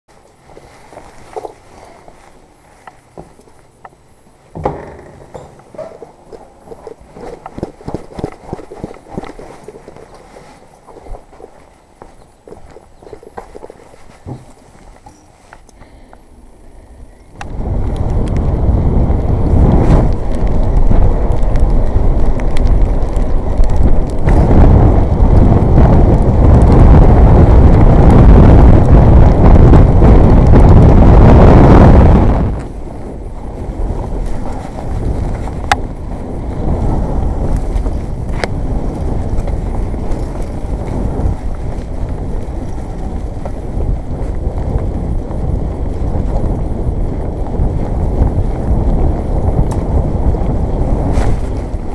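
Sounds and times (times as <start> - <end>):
wind buffeting microphone: 0.1 - 51.9
bike frame and chain rattling: 1.0 - 15.7, 32.7 - 51.9.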